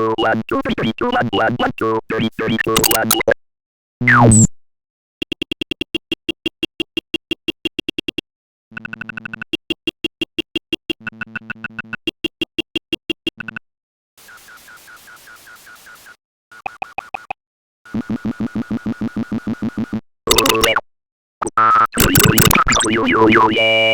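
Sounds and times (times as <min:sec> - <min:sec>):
electronic hiss: 0:14.2 - 0:16.1.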